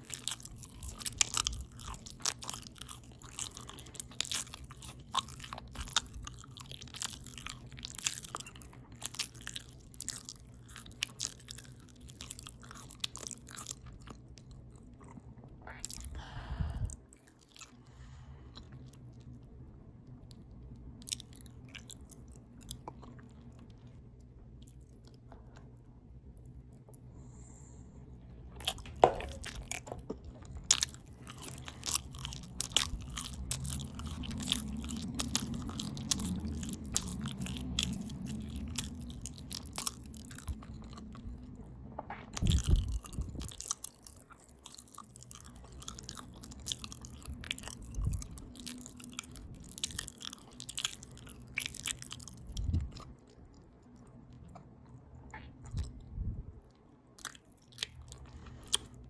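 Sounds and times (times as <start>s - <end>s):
open-mouth chewing: 0.0s - 27.8s, 28.4s - 41.6s, 42.3s - 59.0s.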